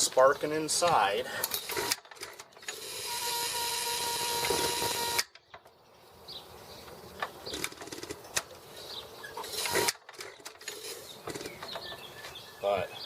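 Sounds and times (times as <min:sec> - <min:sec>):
ignition coil buzzing: 0:01.6 - 0:05.4.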